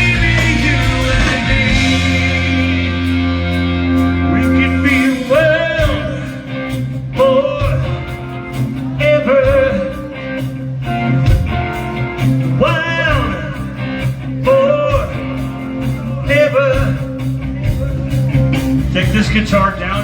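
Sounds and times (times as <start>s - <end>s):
person singing: 0.0s - 10.2s
bass guitar: 0.0s - 20.0s
electric guitar: 0.0s - 20.0s
steady drum beat: 0.0s - 20.0s.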